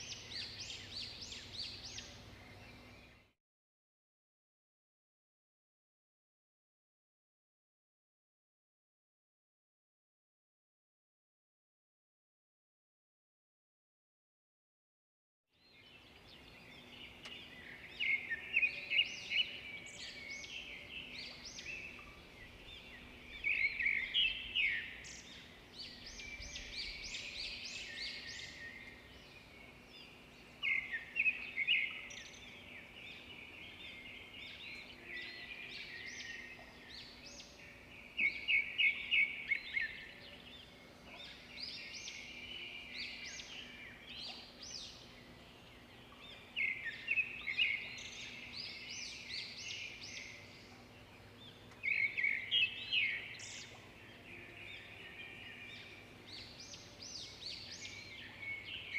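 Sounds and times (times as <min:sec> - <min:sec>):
birds chirping and trilling: 0:00.0 - 0:03.3, 0:15.6 - 0:58.9
faint steady hum: 0:15.9 - 0:58.9.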